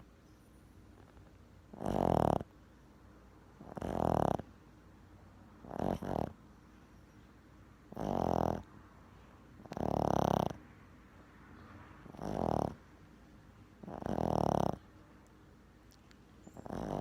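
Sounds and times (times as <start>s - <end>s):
animal snoring: 1.0s - 2.5s, 3.6s - 4.5s, 5.6s - 6.4s, 7.9s - 8.7s, 9.6s - 10.6s, 12.0s - 12.8s, 13.8s - 14.9s, 16.6s - 17.0s.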